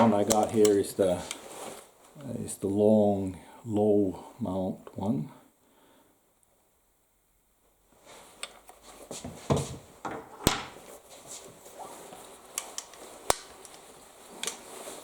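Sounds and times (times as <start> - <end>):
rifle handling noises: 0.0 - 1.5, 12.5 - 14.7.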